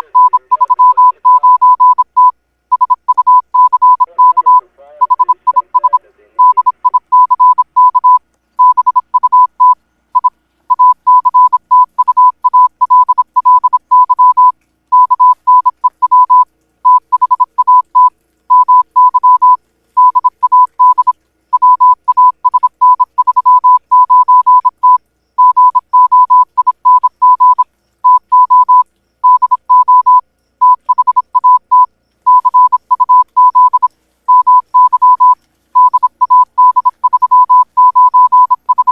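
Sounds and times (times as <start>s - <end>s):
electronic beeps: 0.0s - 38.9s.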